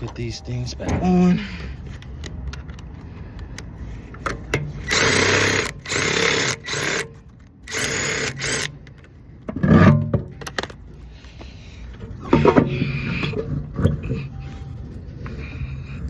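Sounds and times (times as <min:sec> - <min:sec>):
impact wrench bursts: 0:04.2 - 0:09.8.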